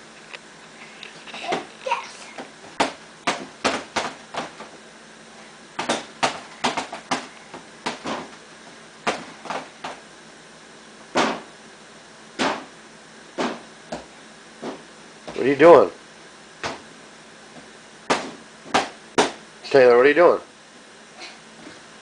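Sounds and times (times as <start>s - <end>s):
feet kicking a dishwasher: 1.3s - 4.8s, 5.8s - 10.0s, 11.1s - 11.5s, 12.4s - 12.7s, 13.4s - 15.6s, 16.6s - 16.9s, 17.5s - 19.4s.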